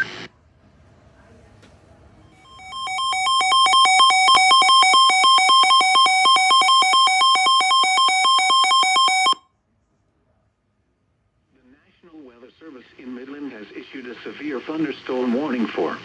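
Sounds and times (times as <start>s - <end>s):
warbling electronic alert beep: 2.5s - 9.4s.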